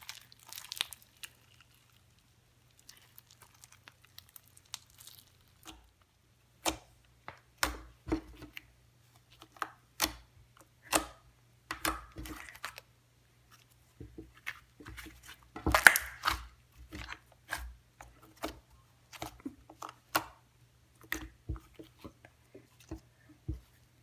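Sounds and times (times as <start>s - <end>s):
slime squishing and popping: 0.0s - 2.0s, 14.3s - 17.7s.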